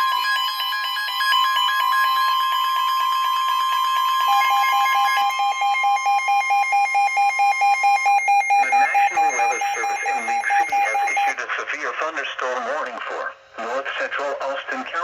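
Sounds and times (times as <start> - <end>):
rapid beeping: 5.5 - 11.4
steady alert tone: 8.0 - 11.4
recorded voice speaking: 8.6 - 15.0.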